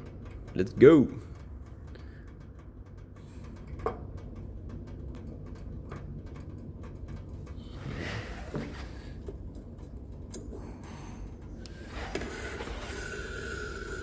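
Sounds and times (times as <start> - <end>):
faint ticking clicks: 0.0 - 7.8
low steady hum: 0.0 - 14.0.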